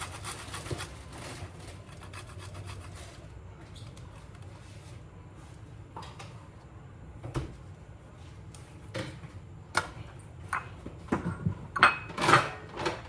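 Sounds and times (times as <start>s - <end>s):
kitchen items knocking and clinking: 10.5s - 13.0s.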